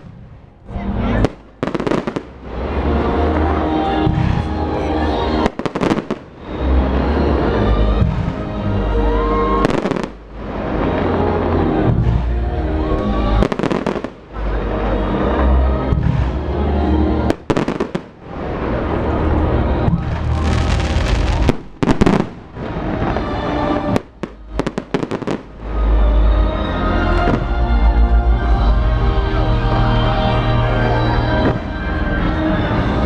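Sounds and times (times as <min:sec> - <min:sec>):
fireworks banging: 0:00.0 - 0:06.6, 0:07.4 - 0:12.4, 0:13.4 - 0:16.6, 0:17.2 - 0:25.8
festival music with heavy bass: 0:00.0 - 0:33.0.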